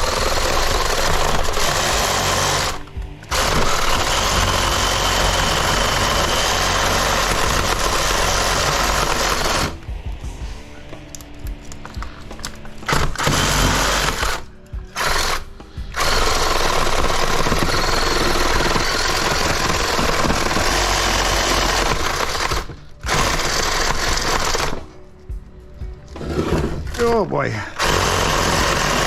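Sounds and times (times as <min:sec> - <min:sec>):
reciprocating saw cutting metal: 0:00.0 - 0:09.8.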